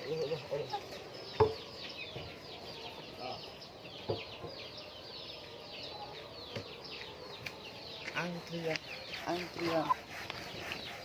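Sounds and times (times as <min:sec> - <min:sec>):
hens chirping: 0:00.0 - 0:11.0
knock: 0:01.4 - 0:01.6.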